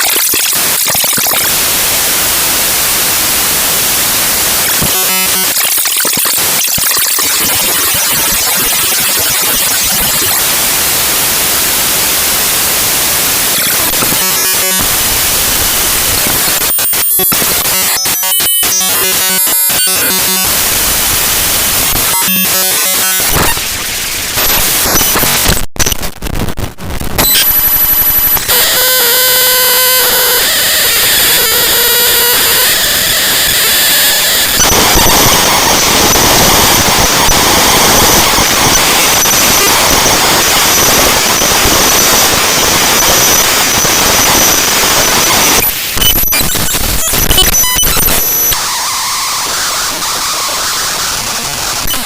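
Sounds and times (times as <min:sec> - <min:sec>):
harsh static noise: 0:00.0 - 0:52.0
fast buzzing pulse: 0:27.2 - 0:52.0
held buzzy tone: 0:27.2 - 0:52.0
buzzy pitched patterns: 0:42.6 - 0:52.0.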